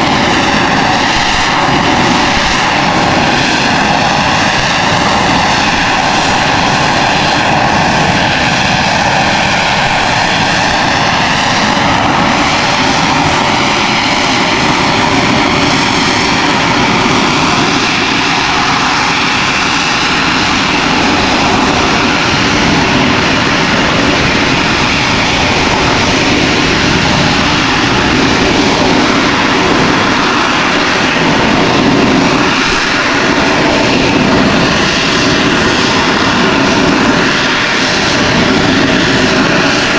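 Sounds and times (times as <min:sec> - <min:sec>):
jet engine roaring: 0:00.0 - 0:39.9.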